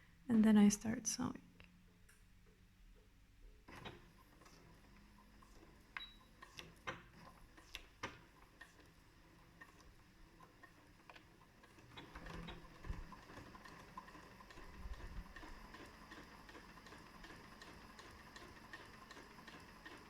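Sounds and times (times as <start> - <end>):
sewing machine needle ticking: 3.7 - 20.0.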